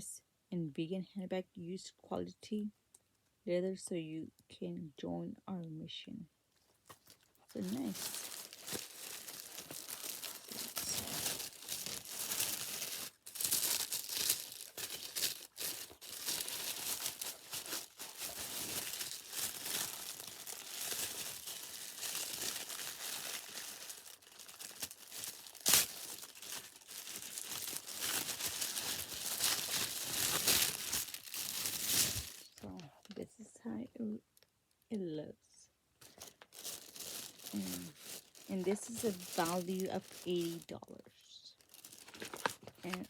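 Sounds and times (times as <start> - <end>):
packaging crinkling and rustling: 6.6 - 33.2, 36.0 - 40.9, 41.6 - 43.0.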